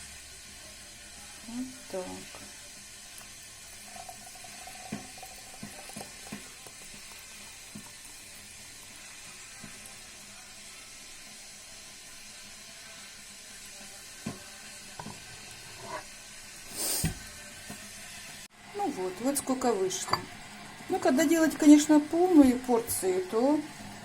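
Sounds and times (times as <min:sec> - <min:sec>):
spoon knocking and scraping a pot: 0:04.8 - 0:08.0, 0:15.0 - 0:16.1, 0:20.0 - 0:20.4
steady hiss: 0:06.3 - 0:18.5.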